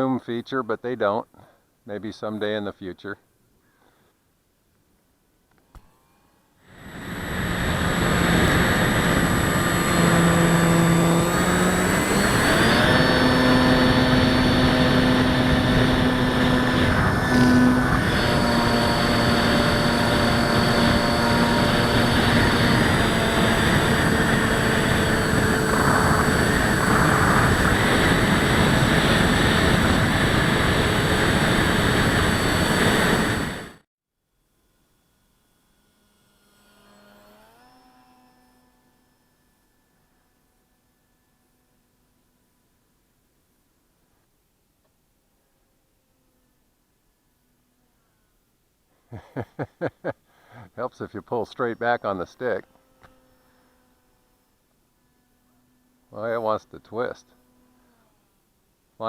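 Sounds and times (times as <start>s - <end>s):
model plane electric motor whining: 5.7s - 33.8s, 34.4s - 43.1s, 51.5s - 58.5s.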